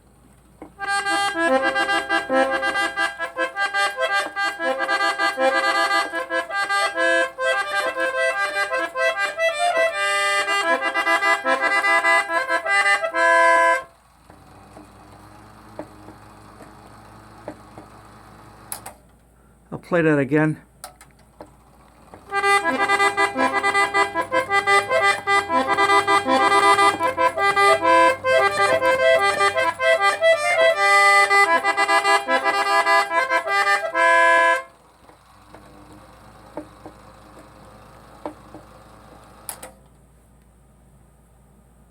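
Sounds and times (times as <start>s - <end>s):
trumpeter clock playing melody: 0.8s - 17.4s, 22.3s - 36.5s.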